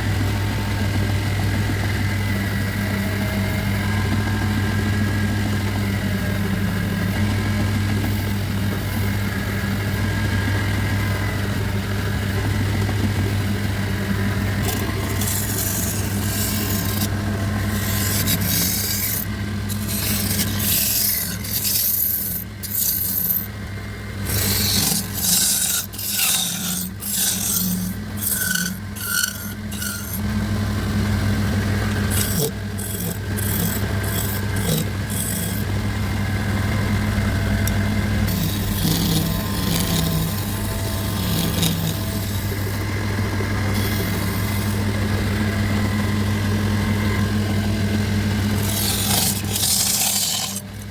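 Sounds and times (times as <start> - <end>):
electric motor humming: 0.0 - 50.9
wood being scraped: 14.6 - 23.5, 24.2 - 30.3, 31.5 - 35.8, 37.6 - 43.0, 43.6 - 45.0, 48.5 - 50.9.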